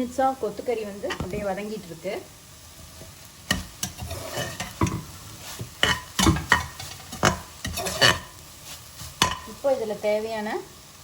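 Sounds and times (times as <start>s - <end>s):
meat sizzling in oil: 0.0s - 11.0s
spatula scraping a pan: 2.9s - 9.6s.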